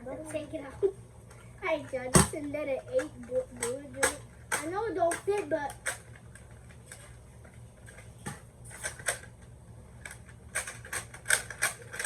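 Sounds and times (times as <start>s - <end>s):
plastic toy parts clicking: 2.9s - 7.0s, 10.0s - 12.0s.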